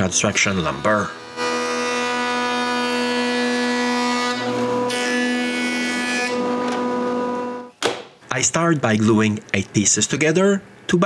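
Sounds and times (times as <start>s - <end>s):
power tool whining: 0.0s - 7.7s.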